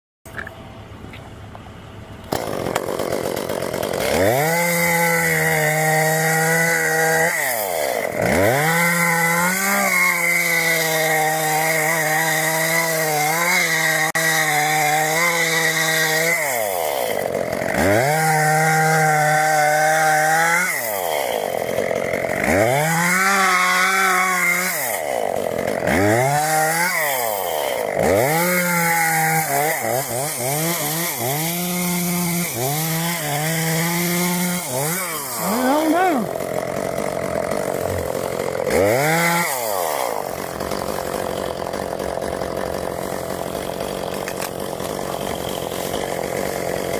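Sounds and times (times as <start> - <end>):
chainsaw running: 2.2 - 46.9.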